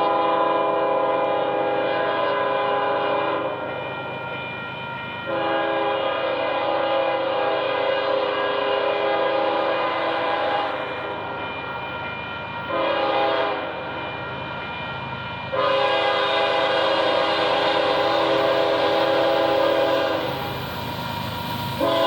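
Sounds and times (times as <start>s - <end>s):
locomotive air horn blasts: 0.0s - 3.5s, 5.3s - 10.8s, 12.7s - 13.7s, 15.5s - 20.4s, 21.8s - 22.0s
low rumble of passing train: 0.0s - 22.0s.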